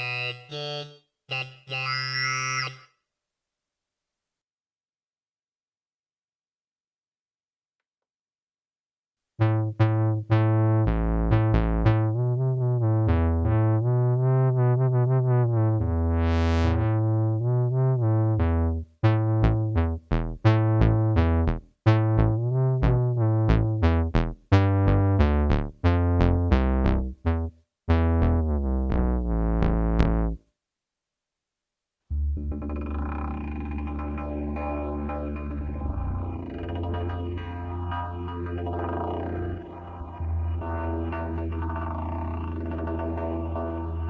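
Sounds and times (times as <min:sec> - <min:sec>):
low bass line: 0:09.4 - 0:30.4, 0:32.1 - 0:44.0
synthesizer short notes: 0:09.4 - 0:30.4
hazy sustained synth sound: 0:32.4 - 0:41.9.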